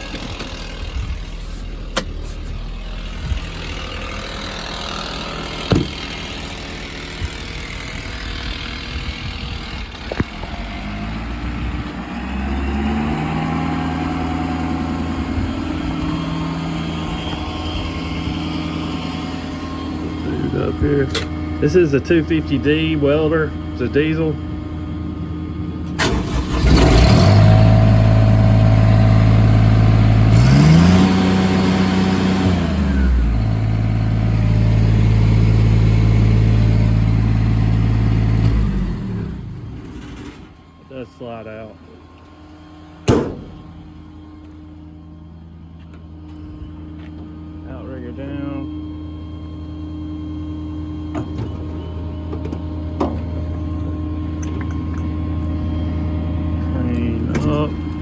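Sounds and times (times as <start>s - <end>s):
diesel welder engine running: 0.0s - 58.0s
sharp knock: 43.1s - 43.6s.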